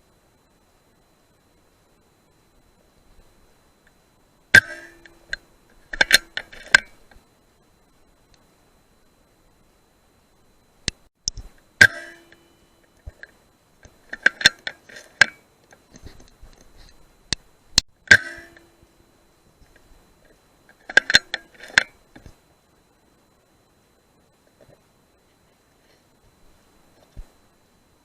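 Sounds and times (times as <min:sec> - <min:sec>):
rifle bolt metallic clicks: 0:04.6 - 0:06.9, 0:20.8 - 0:21.9.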